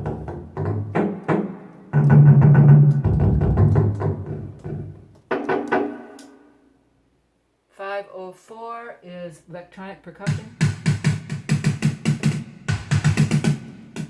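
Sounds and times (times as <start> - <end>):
keyboard drum notes: 0.0 - 6.4, 10.2 - 14.0.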